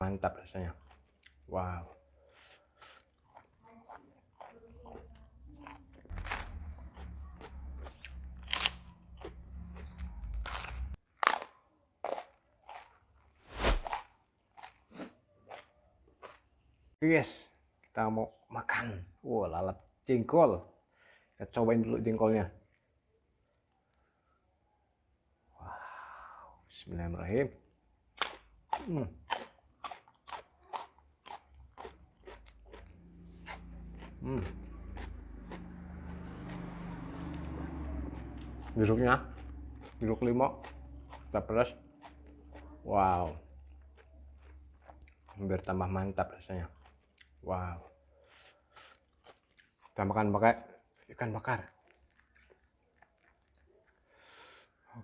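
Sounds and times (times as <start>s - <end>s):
crunchy chewing: 0.3s - 16.6s, 28.1s - 54.8s
low rumble: 6.1s - 11.0s.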